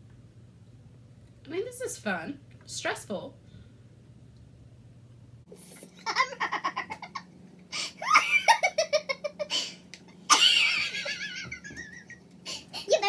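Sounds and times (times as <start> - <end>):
people giggling: 6.0 - 7.3, 10.3 - 12.2.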